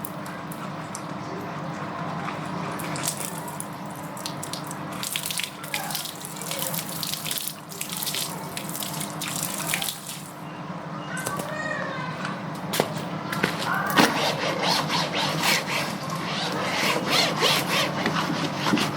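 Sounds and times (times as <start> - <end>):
water running and splashing: 2.9 - 10.3.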